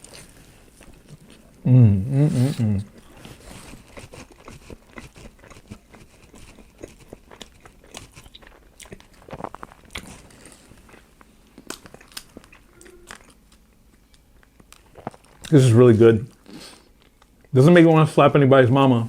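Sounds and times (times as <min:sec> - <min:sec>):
wet chewing mouth clicks: 0:03.0 - 0:11.0.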